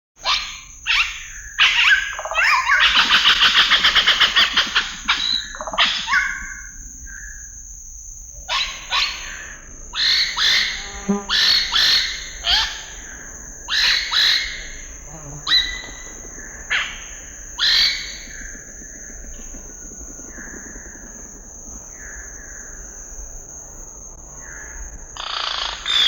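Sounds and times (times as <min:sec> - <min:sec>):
steady high whine: 0:06.4 - 0:25.9
birds calling: 0:08.5 - 0:21.2.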